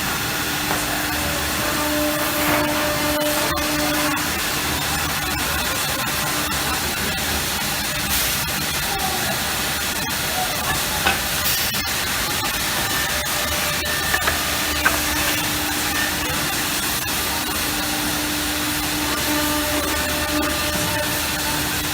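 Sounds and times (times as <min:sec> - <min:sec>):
wood router hissing: 0:00.2 - 0:07.3, 0:12.6 - 0:21.9.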